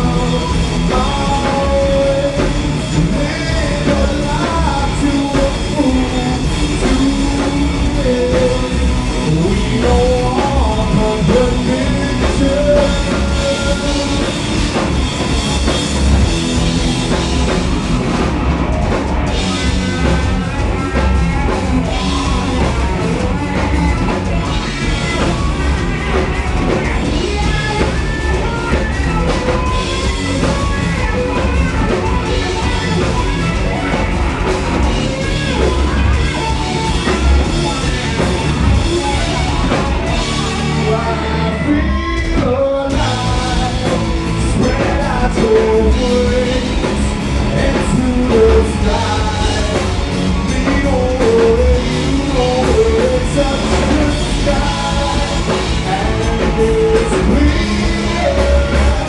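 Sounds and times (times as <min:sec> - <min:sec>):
person singing: 0:00.0 - 0:15.3, 0:19.3 - 0:59.0
rock band playing: 0:00.0 - 0:59.0.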